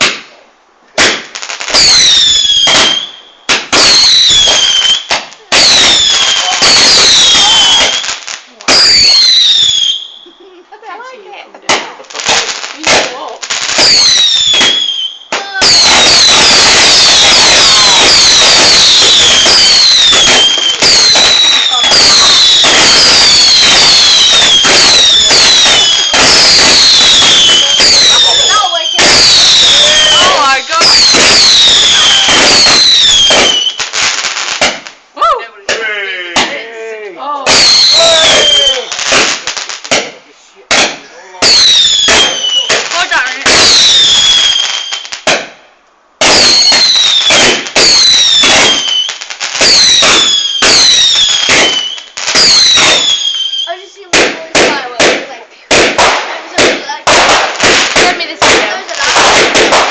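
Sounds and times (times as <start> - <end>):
fireworks crackling bangs: 0.0 - 59.9
fireworks whistles falling in pitch: 1.0 - 10.4, 13.6 - 34.9, 37.5 - 40.1, 40.8 - 45.6, 46.2 - 55.0.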